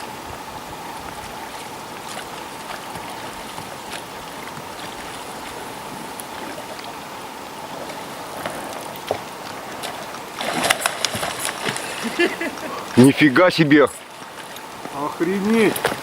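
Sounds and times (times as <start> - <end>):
faint steady whine: 0.0 - 16.0
river water rushing around boat: 0.0 - 16.0
small ticks and splashes: 0.9 - 16.0.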